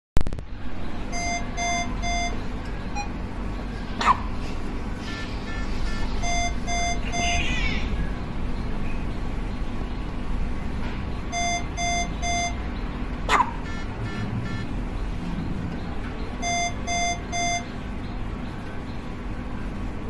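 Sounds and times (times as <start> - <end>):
fainter beeps: 1.0 - 3.2, 5.0 - 7.7, 11.3 - 12.6, 13.6 - 14.7, 16.4 - 17.8
patient monitor alarm beeping: 1.0 - 3.2, 5.0 - 7.6, 11.2 - 12.8, 13.6 - 14.8, 16.2 - 17.9.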